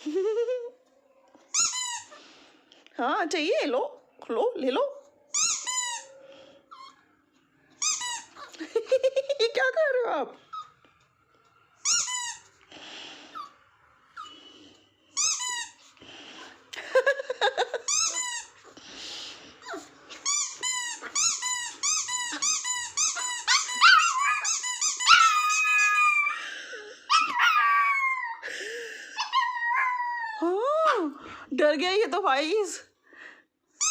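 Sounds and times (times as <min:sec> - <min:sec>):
rubber squeaky toy squeaking: 0:01.5 - 0:02.2, 0:05.3 - 0:07.1, 0:07.8 - 0:08.6, 0:11.8 - 0:12.6, 0:15.2 - 0:15.9, 0:17.8 - 0:18.7, 0:19.6 - 0:26.3
squeaky toy hissing air: 0:01.5 - 0:02.2, 0:05.3 - 0:07.0, 0:11.8 - 0:12.6, 0:15.1 - 0:16.0, 0:17.9 - 0:18.8, 0:19.7 - 0:26.3.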